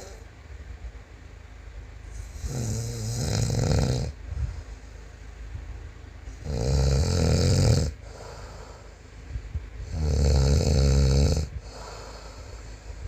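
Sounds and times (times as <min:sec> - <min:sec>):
man snoring loudly: 0:02.2 - 0:04.2, 0:06.3 - 0:08.6, 0:09.8 - 0:12.3
quiet breathing: 0:04.1 - 0:05.6, 0:07.9 - 0:10.1, 0:11.4 - 0:13.0.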